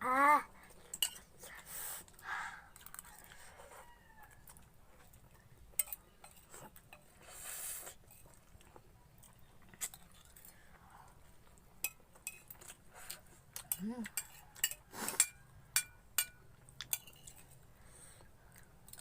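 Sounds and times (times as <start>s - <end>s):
cutlery clicking on a plate: 5.8s - 7.1s, 13.6s - 17.4s.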